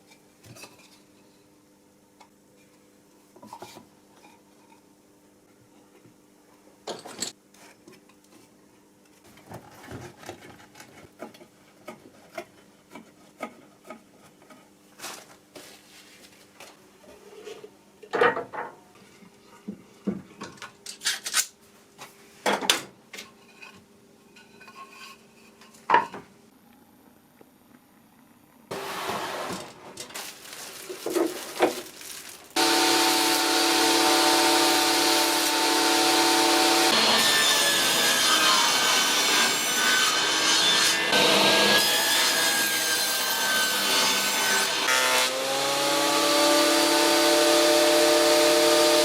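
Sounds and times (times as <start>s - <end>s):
wooden pieces and tools clattering: 28.8s - 36.6s.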